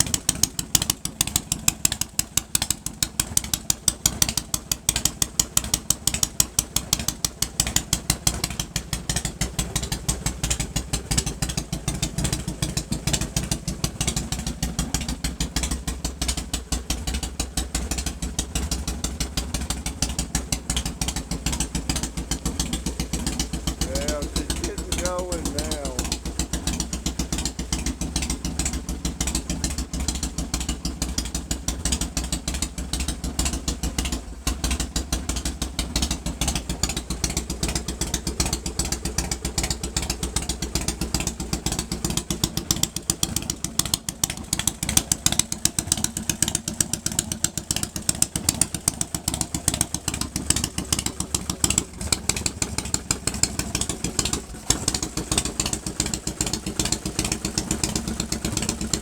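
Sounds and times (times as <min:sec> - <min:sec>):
motorcycle engine idling: 0:00.0 - 0:59.0.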